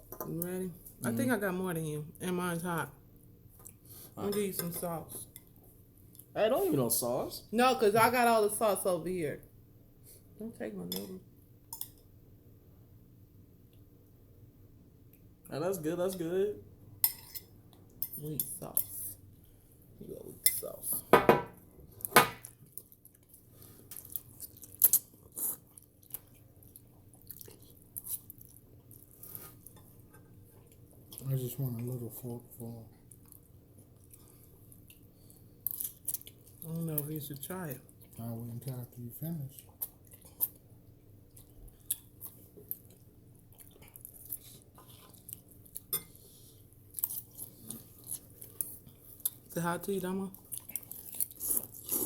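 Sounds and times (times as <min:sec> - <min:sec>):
people chewing noodles: 0:22.6 - 0:32.4, 0:33.0 - 0:49.6, 0:50.4 - 0:52.0.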